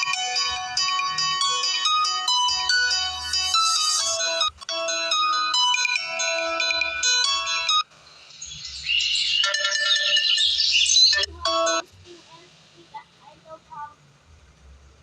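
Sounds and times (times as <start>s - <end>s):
melodic electronic ringtone: 0.0s - 11.9s
high chirping alarm tone: 8.4s - 11.8s.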